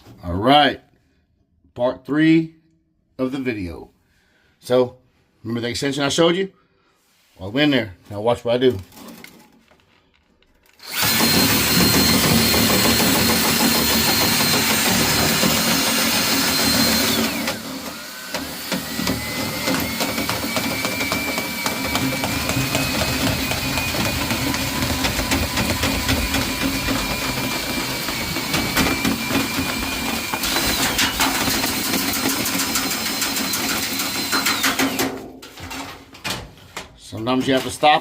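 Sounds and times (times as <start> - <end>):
power drill motor whining: 10.6 - 35.1.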